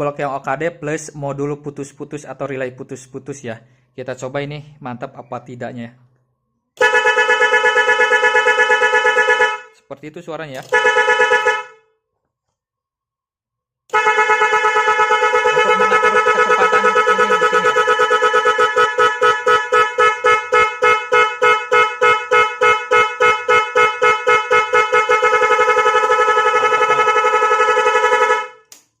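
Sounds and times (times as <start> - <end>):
pulsing electric horn honks: 13.9 - 28.7.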